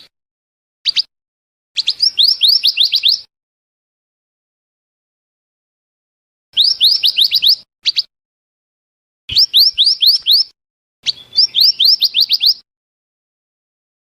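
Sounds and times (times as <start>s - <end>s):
high-pitched bird chirps: 0.8s - 1.1s, 1.8s - 3.3s, 6.6s - 8.1s, 9.3s - 12.7s.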